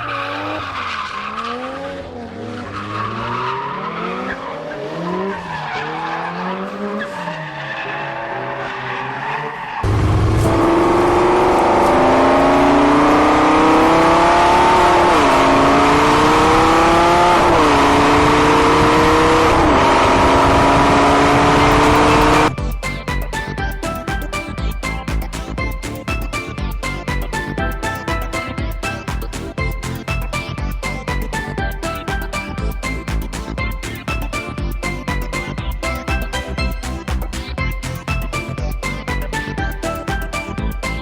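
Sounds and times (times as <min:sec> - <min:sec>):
tyres skidding squeal: 0:00.0 - 0:10.6
racing car engine accelerating: 0:00.0 - 0:22.6.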